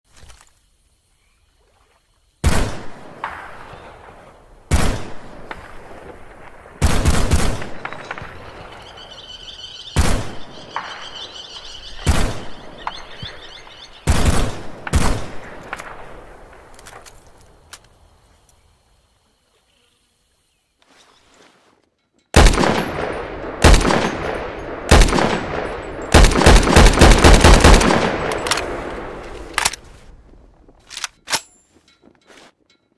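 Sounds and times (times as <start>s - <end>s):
rifle shots echoing: 2.4s - 9.1s, 14.0s - 16.7s, 22.4s - 29.8s.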